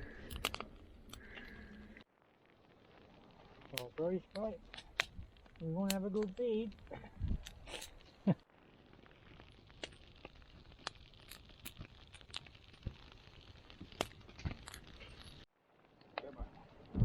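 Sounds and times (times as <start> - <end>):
oil popping and crackling: 0.0 - 17.0
scallops sizzling in a pan: 3.3 - 15.5.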